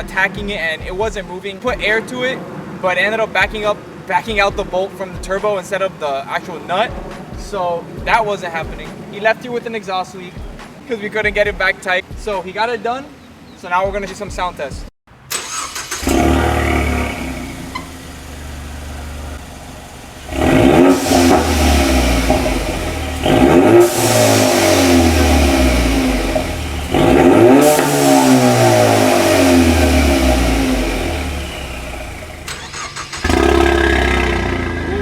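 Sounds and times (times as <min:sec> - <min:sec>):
car engine idling and revving: 0:15.1 - 0:35.0.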